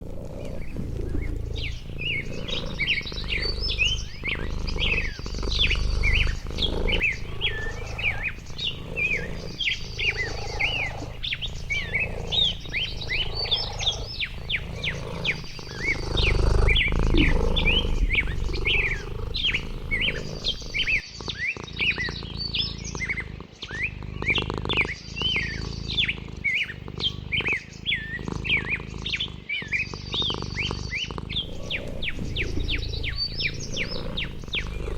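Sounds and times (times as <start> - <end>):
small birds chirping: 0.0 - 34.9
low rumble: 11.1 - 21.0.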